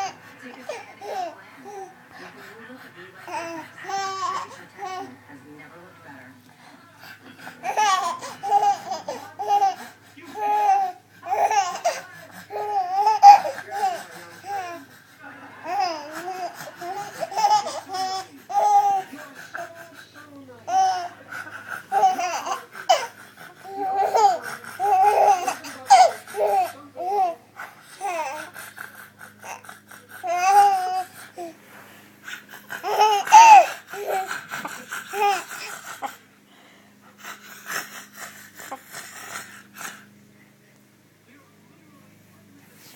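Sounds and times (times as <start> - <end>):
baby laughing: 0.0 - 1.9, 3.3 - 5.1, 7.4 - 15.0, 15.6 - 20.0, 20.7 - 31.5, 32.3 - 36.2
person breathing heavily: 27.6 - 40.2.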